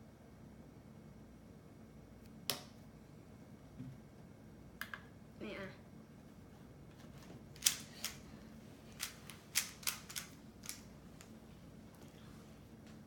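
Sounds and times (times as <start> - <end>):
puzzle cube plastic clicks: 7.6 - 8.2, 8.9 - 11.3.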